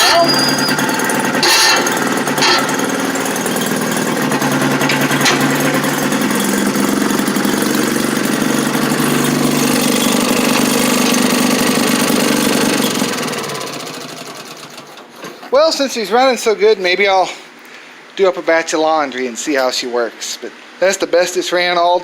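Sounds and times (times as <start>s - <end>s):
two-stroke engine popping: 0.0s - 15.6s.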